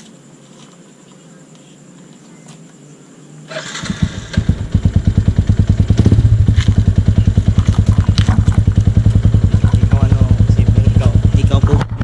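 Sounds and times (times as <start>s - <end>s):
motorcycle engine starting and idling: 3.5s - 12.0s.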